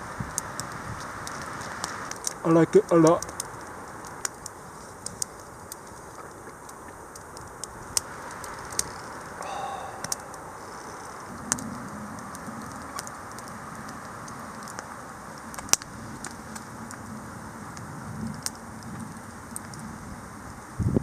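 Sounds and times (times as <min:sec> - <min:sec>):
camp stove hissing: 0:00.0 - 0:06.3, 0:06.9 - 0:16.6
sausage crackling: 0:00.0 - 0:17.0.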